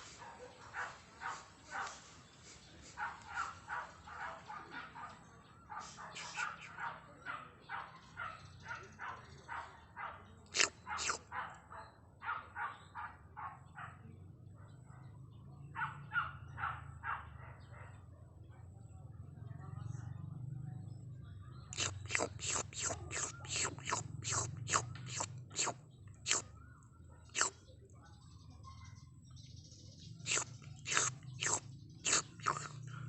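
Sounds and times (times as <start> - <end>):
cat slurping: 10.4 - 11.2, 21.7 - 26.5, 27.3 - 27.6, 30.2 - 33.0.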